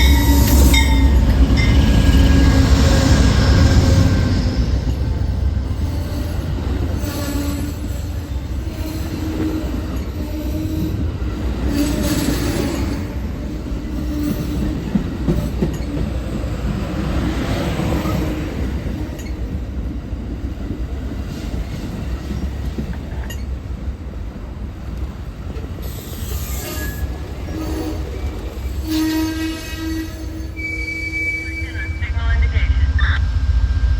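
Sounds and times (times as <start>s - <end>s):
diesel train rumble: 0.0s - 33.9s
wheel squeal: 25.9s - 31.6s.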